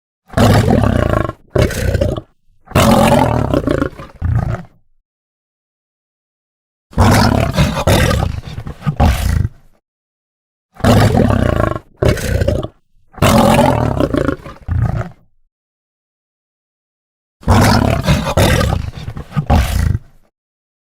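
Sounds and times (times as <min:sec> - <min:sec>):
lion roaring: 0:00.3 - 0:04.8, 0:06.9 - 0:09.8, 0:10.8 - 0:15.3, 0:17.4 - 0:20.3.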